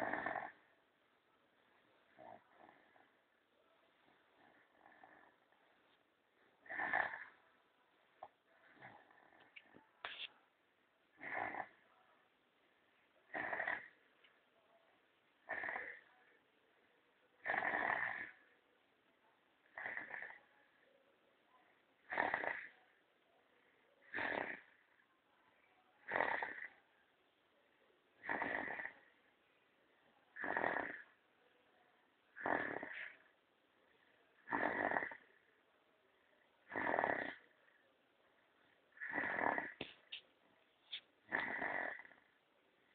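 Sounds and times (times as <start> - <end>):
person snoring: 0.0 - 0.6, 4.3 - 5.5, 6.6 - 7.4, 11.2 - 11.8, 13.3 - 14.0, 15.5 - 16.1, 17.4 - 18.4, 19.7 - 20.4, 22.1 - 22.8, 24.0 - 24.8, 26.1 - 26.8, 28.2 - 29.1, 30.4 - 31.1, 32.4 - 33.2, 34.4 - 35.4, 36.7 - 37.5, 39.0 - 39.9, 41.3 - 42.3.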